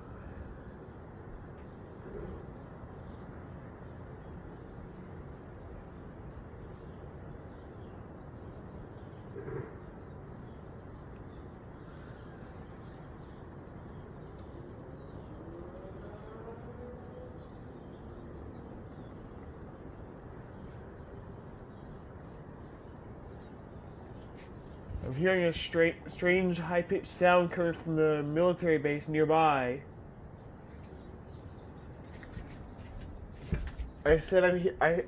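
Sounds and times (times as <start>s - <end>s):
outdoor background noise: 0.0s - 35.0s
faint wailing siren: 15.2s - 19.1s.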